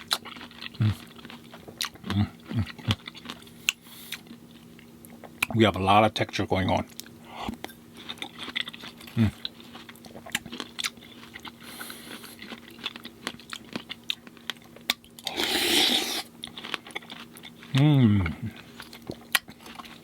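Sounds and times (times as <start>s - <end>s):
chewing and biting fruit: 0.0s - 5.6s, 8.0s - 20.0s.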